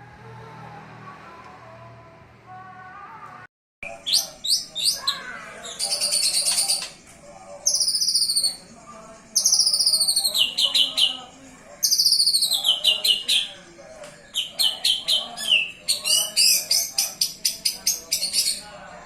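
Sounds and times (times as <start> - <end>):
fainter lower chirping: 7.6 - 18.7.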